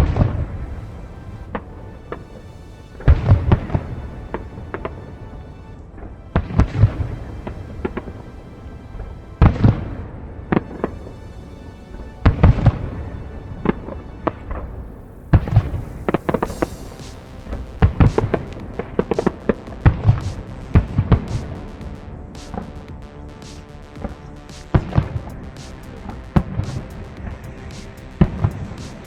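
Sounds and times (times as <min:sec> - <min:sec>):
music playing: 0:00.0 - 0:29.0
rapid firework crackling: 0:15.0 - 0:29.0.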